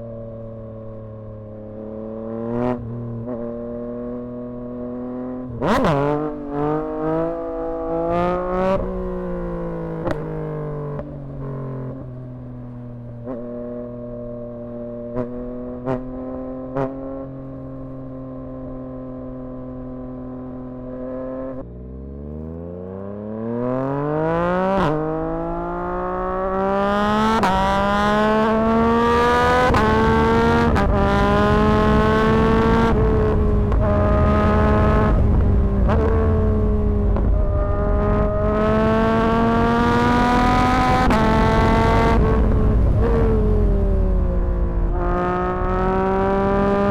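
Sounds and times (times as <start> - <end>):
motorcycle engine revving: 1.5 - 12.0, 13.1 - 46.9
exhaust pops and crackles: 30.7 - 38.7.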